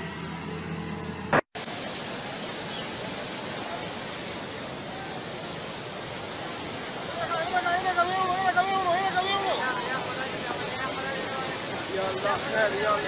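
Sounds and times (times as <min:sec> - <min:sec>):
steady rushing noise: 0:00.0 - 0:13.0.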